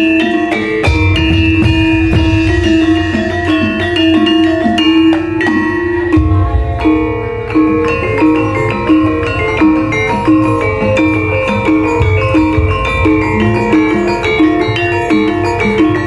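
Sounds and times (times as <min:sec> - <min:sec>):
metallophones striking melody: 0:00.0 - 0:16.0
low pulsing bass: 0:06.1 - 0:09.8.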